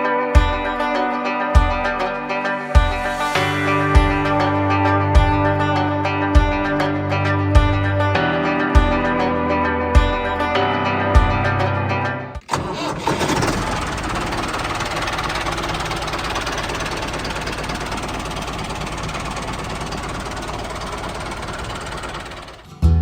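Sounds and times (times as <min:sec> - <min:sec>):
small engine starting and running: 0:12.4 - 0:22.8.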